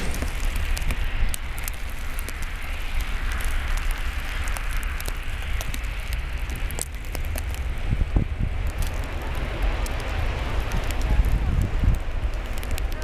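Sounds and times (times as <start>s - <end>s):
steady hiss: 0.0s - 8.2s
wind rumbling on microphone: 0.0s - 13.0s.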